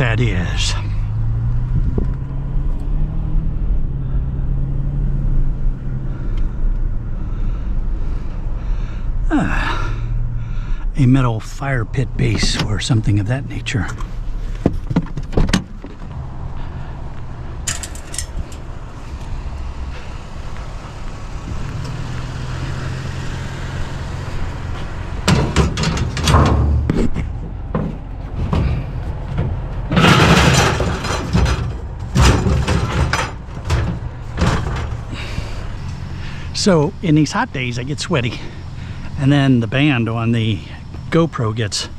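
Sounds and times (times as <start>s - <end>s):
metal clanks and bangs: 17.6s - 18.7s, 24.6s - 36.0s.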